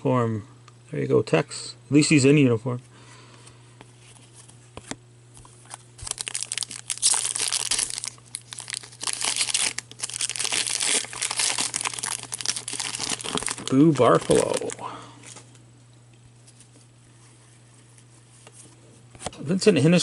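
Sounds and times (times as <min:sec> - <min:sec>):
wrapper crinkling and tearing: 0:05.5 - 0:14.8.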